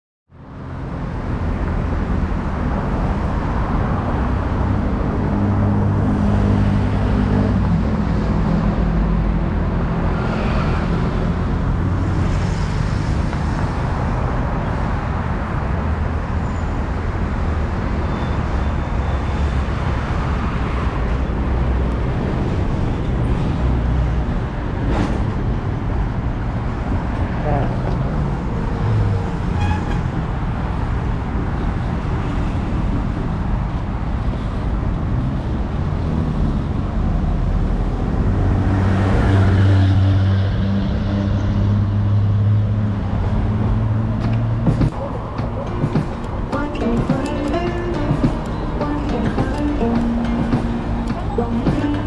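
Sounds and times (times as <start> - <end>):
boat engine rumble: 43.2 - 52.0.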